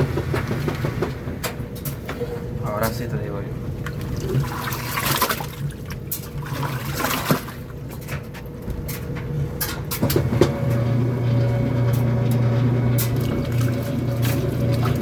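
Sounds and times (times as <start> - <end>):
water sloshing in washing machine: 0.0 - 15.0
drain pump motor humming: 3.5 - 8.2, 9.9 - 15.0.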